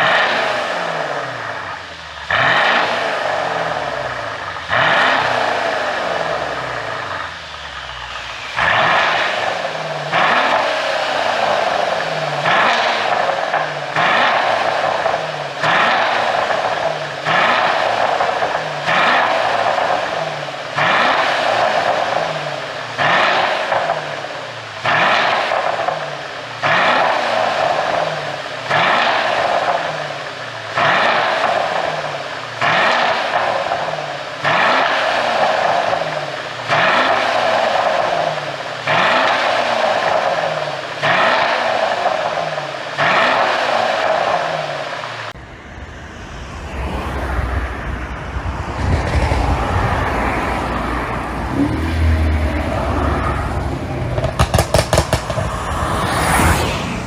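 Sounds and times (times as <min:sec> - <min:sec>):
exhaust crackling and popping: 0:00.0 - 0:45.4, 0:47.7 - 0:56.4
car engine revving: 0:00.0 - 0:57.0
low engine rumble: 0:03.0 - 0:20.9, 0:45.1 - 0:57.0.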